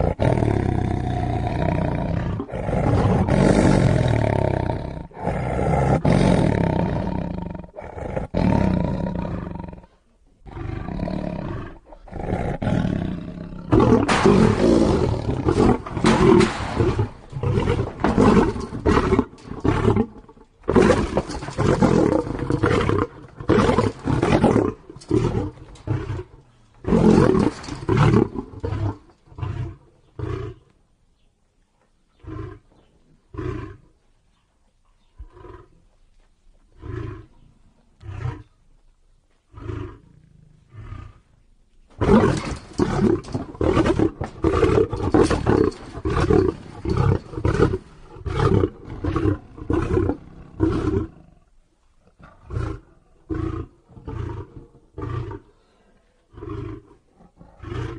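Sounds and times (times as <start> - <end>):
lion grunting: 0.0 - 30.6
lion roaring: 0.0 - 30.6, 42.0 - 51.5, 56.3 - 57.9.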